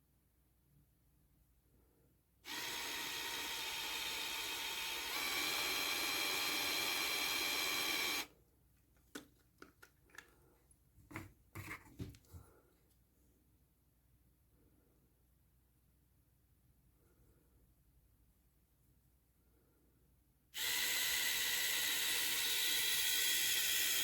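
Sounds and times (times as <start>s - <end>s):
plastic handling clicks: 8.9s - 10.4s.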